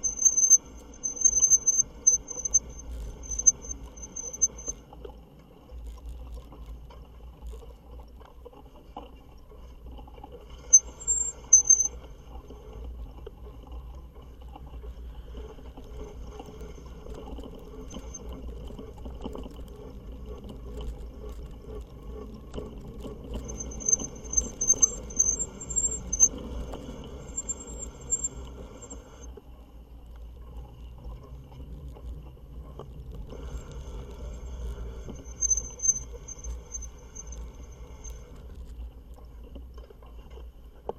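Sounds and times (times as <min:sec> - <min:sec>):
thin high-pitched tone: 0:00.0 - 0:04.8, 0:10.7 - 0:12.0, 0:23.4 - 0:29.3, 0:35.0 - 0:38.2
e-bike riding through snow: 0:00.0 - 0:08.8, 0:09.7 - 0:39.4.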